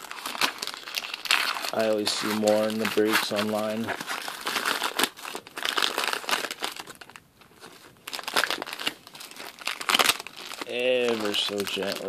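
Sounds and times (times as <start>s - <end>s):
wrapper crinkling: 0.0s - 12.0s.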